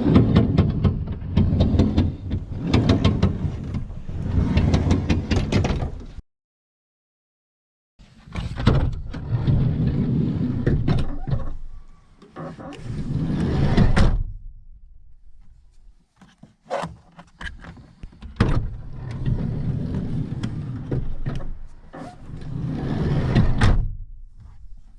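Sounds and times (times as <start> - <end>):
sliding door grinding on rail: 0.0 - 5.9, 9.0 - 11.2, 12.4 - 14.0, 18.7 - 21.3, 21.9 - 23.6.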